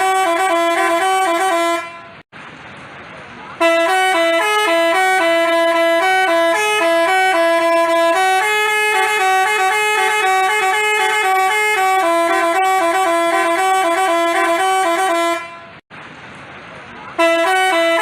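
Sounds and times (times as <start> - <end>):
multi-tone bus horn tune: 0.0 - 2.3, 3.6 - 15.8, 17.2 - 18.0.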